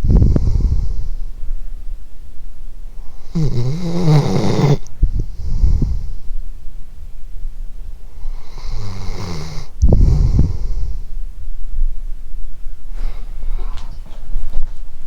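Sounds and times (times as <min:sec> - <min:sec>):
dog snoring: 0:00.0 - 0:01.2, 0:03.1 - 0:06.2, 0:08.2 - 0:11.1
dog breathing: 0:00.0 - 0:01.4, 0:03.0 - 0:06.4, 0:08.1 - 0:11.2, 0:12.9 - 0:14.5.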